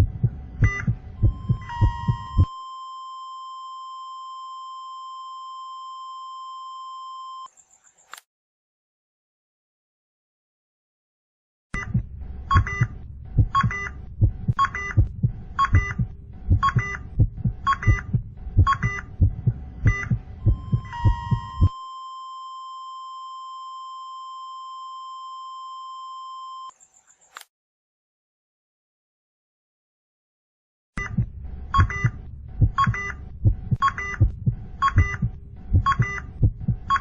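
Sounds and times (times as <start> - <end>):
heartbeat thumps: 0.0 - 2.5, 11.8 - 21.8, 31.1 - 37.0
flatline tone: 0.0 - 7.5, 14.6 - 26.7
heart monitor beep: 0.0 - 7.5, 11.8 - 26.7, 31.0 - 37.0.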